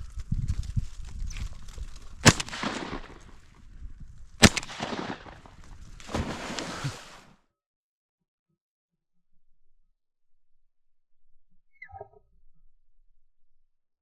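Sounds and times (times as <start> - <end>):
shotgun blasts with echo: 2.2 - 3.5, 4.4 - 7.1.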